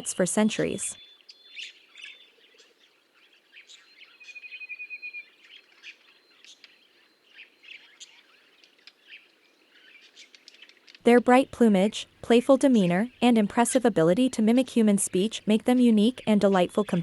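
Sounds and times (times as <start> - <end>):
budgerigars chirping faintly: 0.0 - 11.0.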